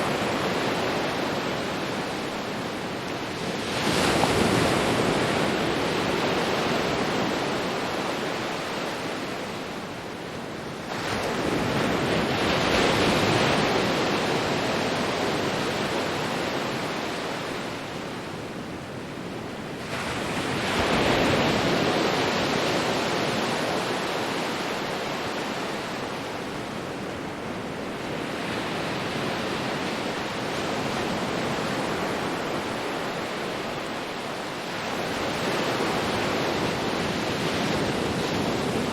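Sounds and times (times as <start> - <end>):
ocean waves breaking on shore: 0.0 - 38.9.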